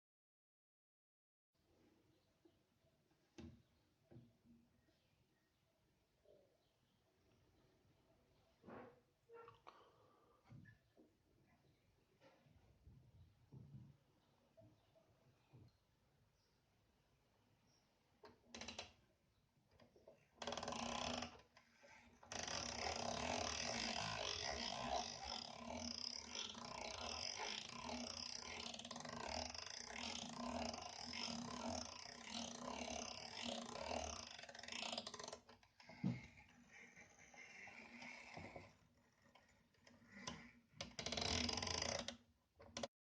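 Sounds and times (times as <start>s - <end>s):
clock winding ratchet clicking: 20.4s - 42.2s.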